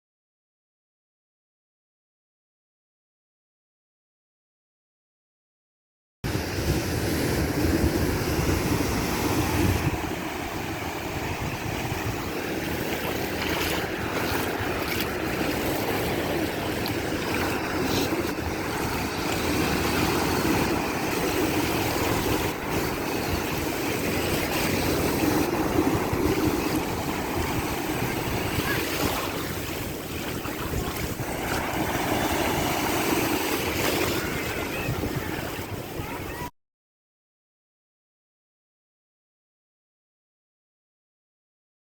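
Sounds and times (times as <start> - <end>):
water noise: 6.3 - 36.5
wind buffeting microphone: 6.3 - 36.5.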